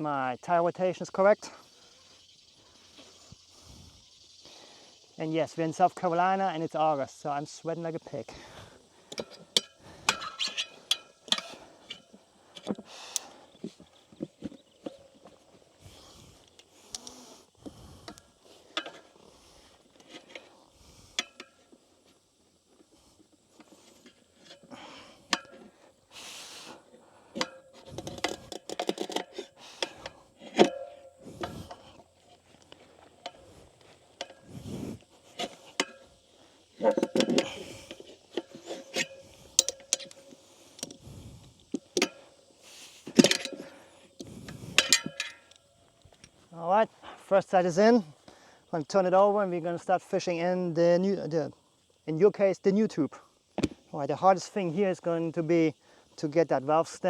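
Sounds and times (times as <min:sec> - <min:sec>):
tire spoons clinking on rim: 0:09.1 - 0:13.3, 0:23.6 - 0:25.7, 0:27.3 - 0:32.6, 0:35.2 - 0:41.0, 0:41.8 - 0:43.8, 0:44.7 - 0:46.3.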